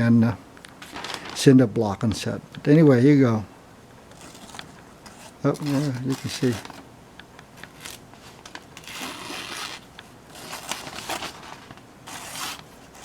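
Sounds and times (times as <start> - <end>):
blade slicing through paper: 4.2 - 6.8, 7.7 - 13.0.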